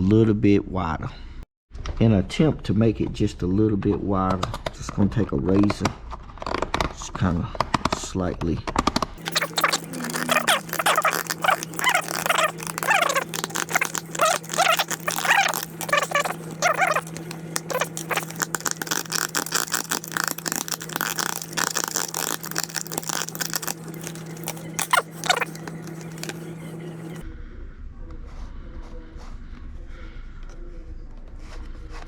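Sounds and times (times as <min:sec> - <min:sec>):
razor blade scraping plastic: 0:09.2 - 0:27.2.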